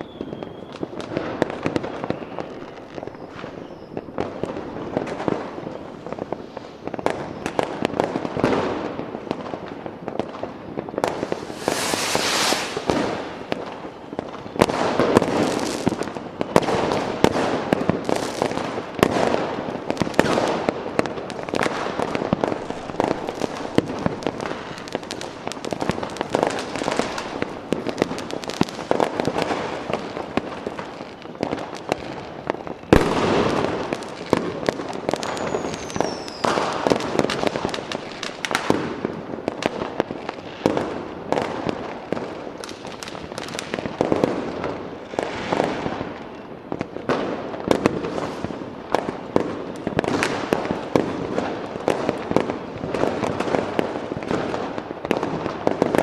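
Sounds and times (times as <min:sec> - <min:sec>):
falling firework whistle: 0:00.0 - 0:04.9, 0:11.0 - 0:15.8, 0:35.1 - 0:37.0
fireworks bangs and crackling: 0:00.0 - 0:56.0.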